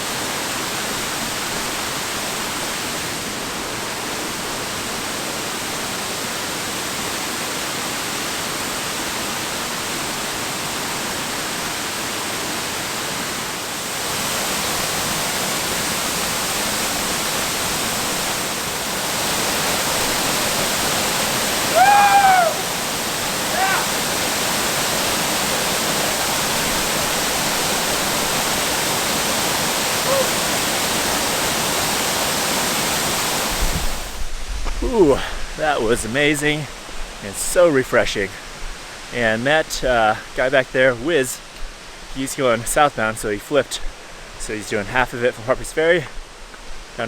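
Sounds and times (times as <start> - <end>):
waterfall rushing: 0.0 - 47.0.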